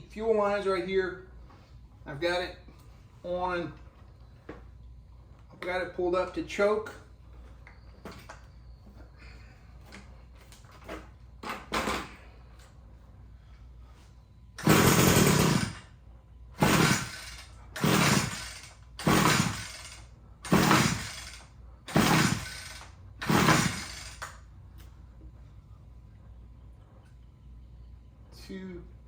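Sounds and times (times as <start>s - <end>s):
engine pull-starter rasping: 16.6s - 24.3s
man talking: 28.4s - 28.9s.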